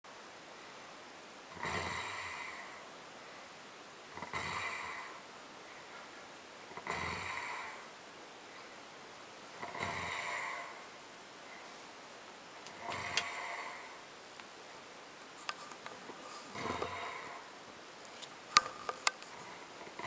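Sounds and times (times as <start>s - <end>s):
person snoring: 1.5s - 2.9s, 4.2s - 5.2s, 6.8s - 7.9s, 9.6s - 10.8s, 12.8s - 14.0s, 16.3s - 17.5s.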